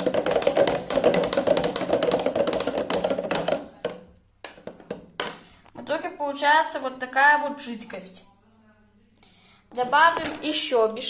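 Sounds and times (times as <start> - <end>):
liquid being stirred clattering: 0.0 - 5.2.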